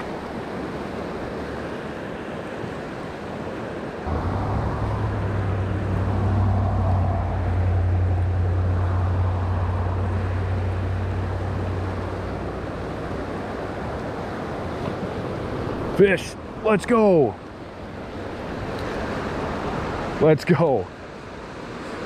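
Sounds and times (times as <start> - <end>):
rushing river water: 0.0 - 22.0
truck engine and road drone: 4.0 - 15.9.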